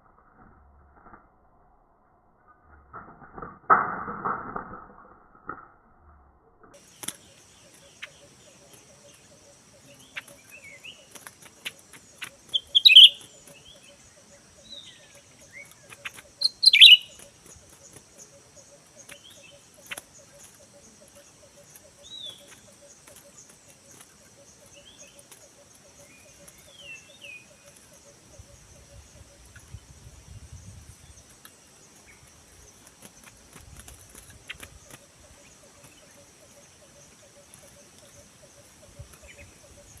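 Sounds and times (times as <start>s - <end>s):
loud sharp bird calls: 6.8s - 29.7s
songbird chirps and whistles: 6.8s - 29.8s
high insect drone: 6.8s - 40.0s.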